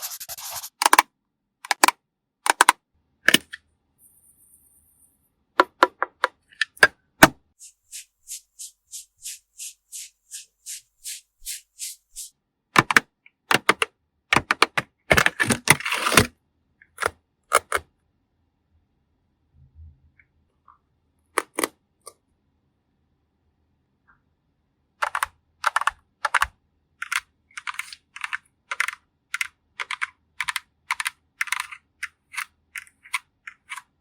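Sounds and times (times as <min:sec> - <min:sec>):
short hissing strokes: 0:07.6 - 0:12.3.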